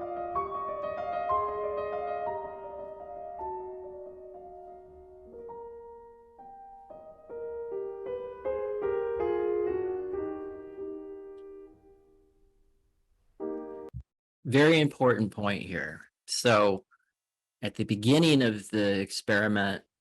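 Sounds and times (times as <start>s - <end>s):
solo piano music: 0.0s - 12.7s, 13.4s - 14.0s.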